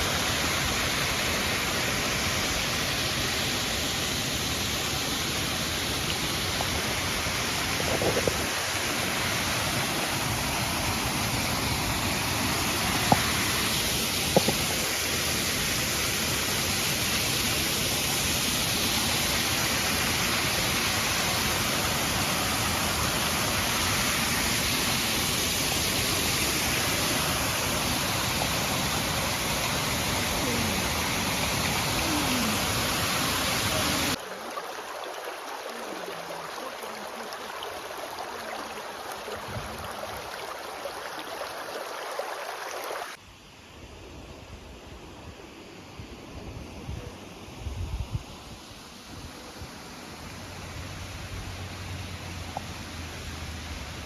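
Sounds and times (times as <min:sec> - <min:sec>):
thin flow of running water: 0:00.0 - 0:43.2
waterfall roar: 0:00.0 - 0:43.2.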